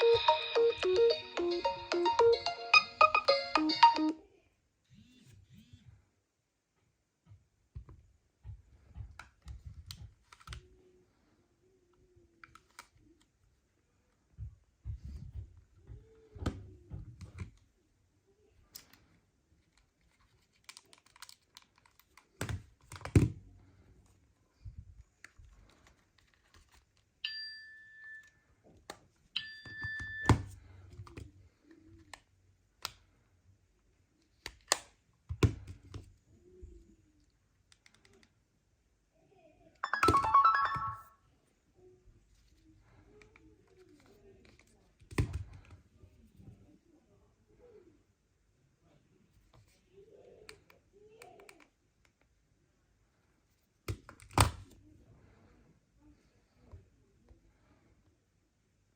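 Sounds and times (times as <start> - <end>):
phone ringtone: 0.0 - 4.2, 39.8 - 41.2
smartphones handled and tapped: 39.8 - 41.0, 53.8 - 54.8
short electronic beeps: 39.8 - 41.1.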